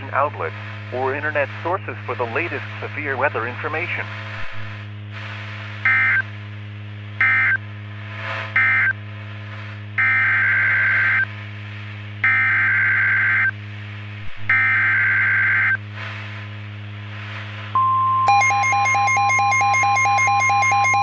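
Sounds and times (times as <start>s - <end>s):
steady low hum: 0.0s - 21.0s
screeching data bursts: 18.3s - 21.0s.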